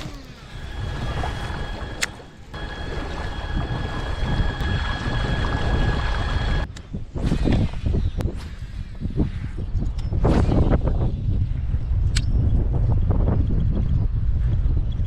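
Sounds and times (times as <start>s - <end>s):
water sounds from kayak: 0.0s - 6.7s
wind buffeting microphone: 0.0s - 15.0s.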